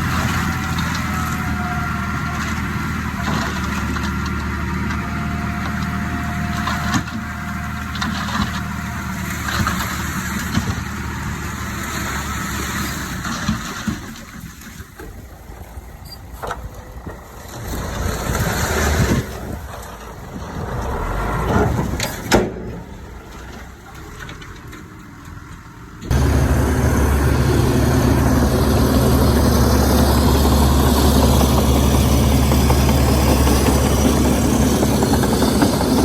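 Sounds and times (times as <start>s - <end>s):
distant diesel engine with knocks: 0.0s - 36.0s
low engine drone close up: 26.0s - 36.0s.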